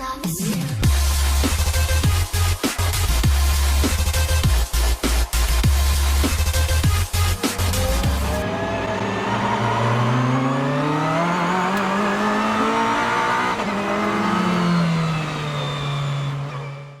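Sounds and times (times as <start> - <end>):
engine revving under load: 5.5 - 17.0.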